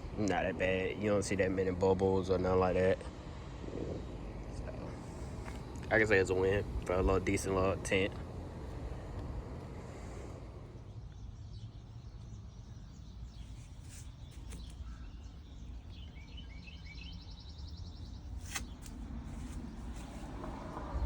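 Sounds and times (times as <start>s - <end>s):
bird chirping and trilling: 10.8s - 18.8s
low rumble: 18.1s - 21.0s.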